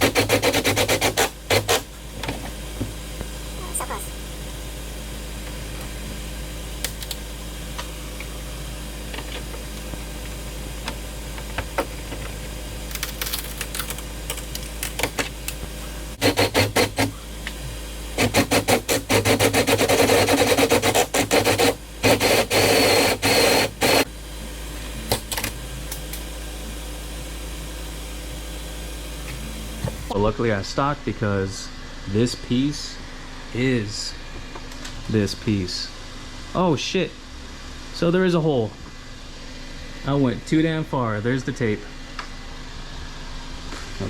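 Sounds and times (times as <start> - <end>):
cordless drill bursts: 16.2 - 17.1, 18.2 - 24.1.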